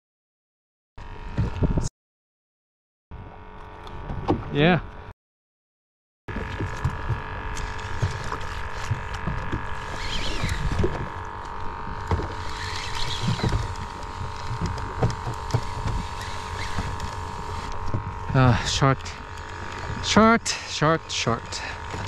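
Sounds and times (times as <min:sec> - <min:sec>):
boat engine rumble: 0:03.2 - 0:05.1, 0:06.3 - 0:22.0
constant whine: 0:06.3 - 0:22.0.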